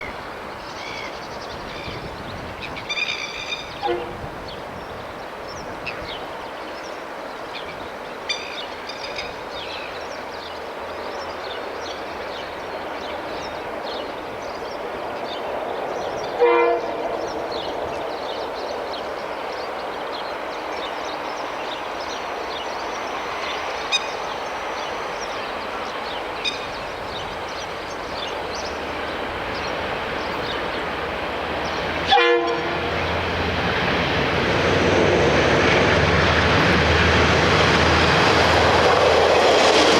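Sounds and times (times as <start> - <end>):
freight train approaching: 0.0 - 39.9
train horn blasts: 3.7 - 4.4, 16.4 - 17.3, 32.0 - 33.2
locomotive engine rumble: 21.4 - 39.9.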